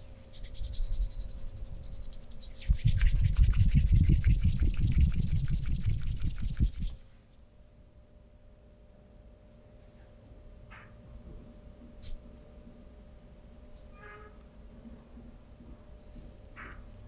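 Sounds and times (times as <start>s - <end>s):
hands rubbing briskly: 0.3s - 7.0s.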